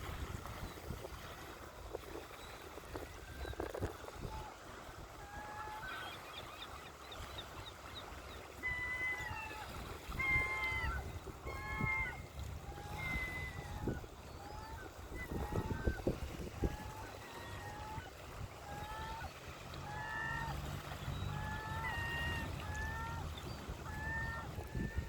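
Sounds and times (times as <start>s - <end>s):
ocean waves rumbling: 0.0s - 25.0s
wind: 0.0s - 25.0s
birds calling: 5.3s - 25.0s.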